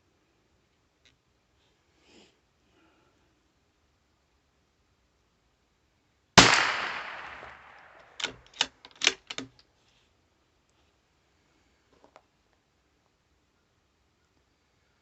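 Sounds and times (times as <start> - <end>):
rifle shot echoing: 6.4 - 9.1
sharp clicks and knocks: 6.7 - 9.6.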